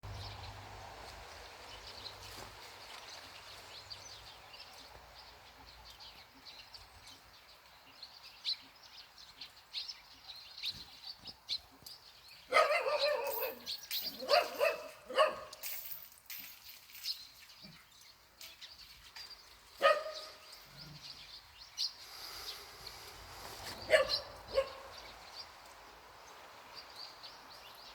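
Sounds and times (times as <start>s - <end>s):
small birds chirping: 0.0s - 15.7s, 16.6s - 27.9s
dog barking: 12.5s - 15.6s, 19.8s - 20.4s, 23.9s - 25.0s.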